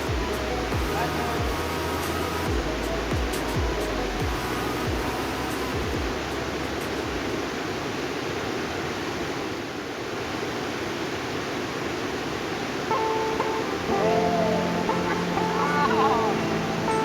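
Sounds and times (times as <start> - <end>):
plucked guitar-like music: 0.0 - 7.0, 12.9 - 17.0
river water rushing: 0.0 - 17.0.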